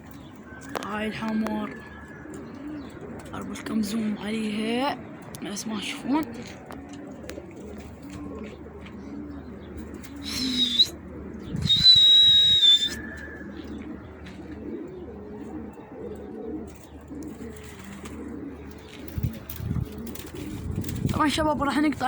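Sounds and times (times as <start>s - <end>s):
pigeons cooing: 0.0s - 22.0s
high whistles: 10.2s - 10.9s, 11.6s - 13.5s.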